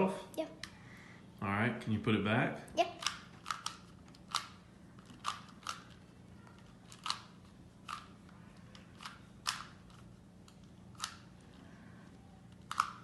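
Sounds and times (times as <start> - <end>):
puzzle cube clicking: 3.0 - 6.0.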